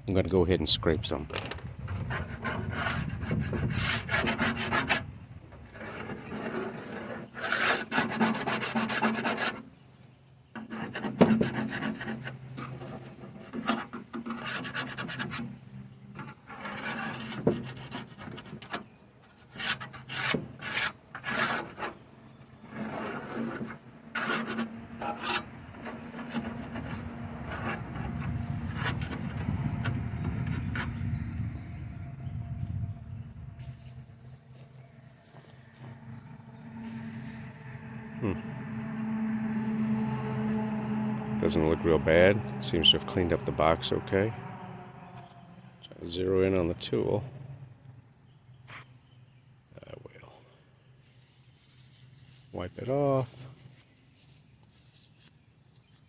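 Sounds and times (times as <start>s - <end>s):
plastic scraper scraping paint: 1.4s - 9.7s, 10.6s - 31.0s.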